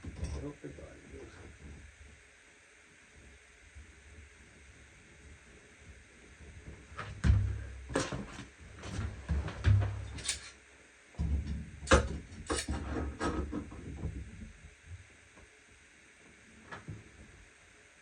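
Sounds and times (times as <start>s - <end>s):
knocks and clunks of hand work: 7.0s - 10.3s.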